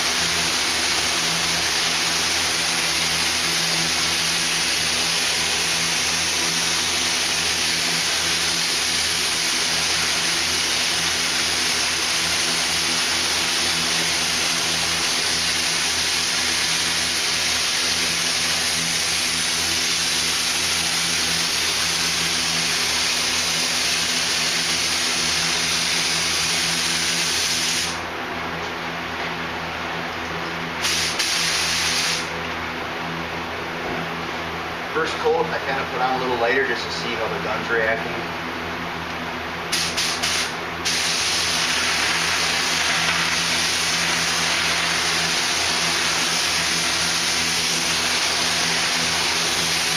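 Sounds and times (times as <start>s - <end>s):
paint spray gun hissing: 0.0s - 28.0s, 30.8s - 32.3s, 39.7s - 49.9s.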